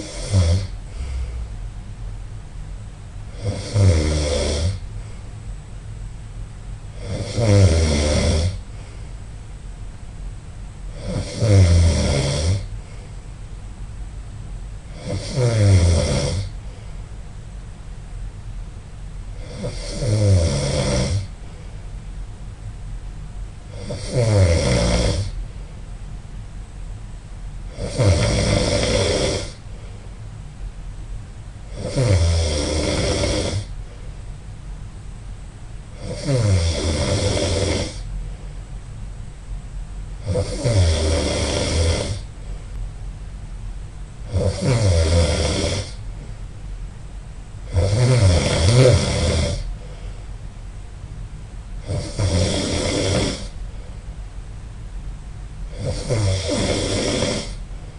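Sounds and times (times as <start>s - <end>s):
person snoring loudly: 0.0s - 1.5s, 3.3s - 4.8s, 7.0s - 8.6s, 10.9s - 12.7s, 14.9s - 16.5s, 19.4s - 21.3s, 23.7s - 25.4s, 27.7s - 29.6s, 31.7s - 33.7s, 36.0s - 38.1s, 40.2s - 42.3s, 44.3s - 46.0s, 47.7s - 49.8s, 51.8s - 53.6s, 55.7s - 57.7s.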